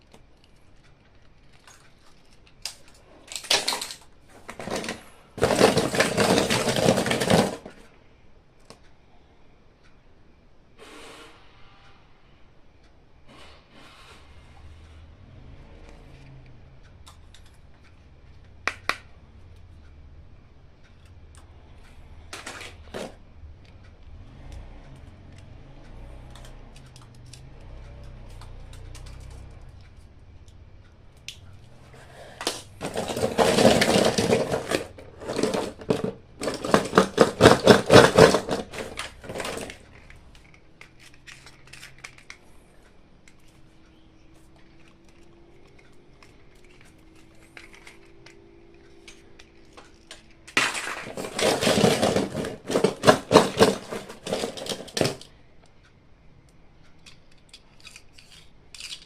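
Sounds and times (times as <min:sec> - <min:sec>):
packaging crackling and rustling: 0:00.0 - 0:07.9, 0:32.5 - 0:42.5, 0:44.6 - 0:55.3.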